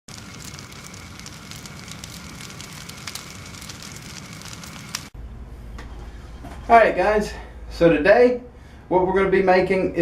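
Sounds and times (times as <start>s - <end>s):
forge fire hissing and crackling: 0.1s - 5.2s.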